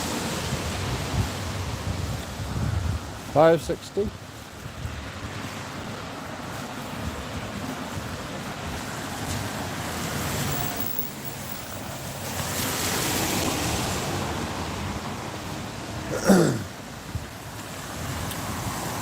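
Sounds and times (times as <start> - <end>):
street traffic: 0.0 - 19.0
wind buffeting microphone: 0.1 - 10.5, 16.6 - 19.0.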